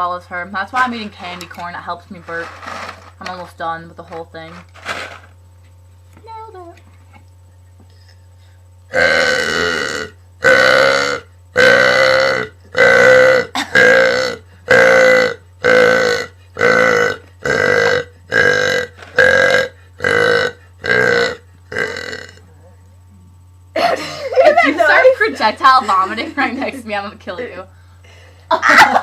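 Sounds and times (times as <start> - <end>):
woman burping loudly: 8.9 - 22.5.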